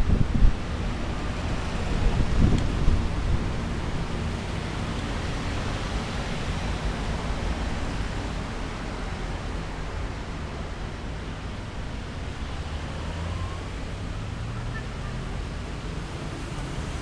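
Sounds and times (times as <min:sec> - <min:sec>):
wind buffeting microphone: 0:00.0 - 0:10.6.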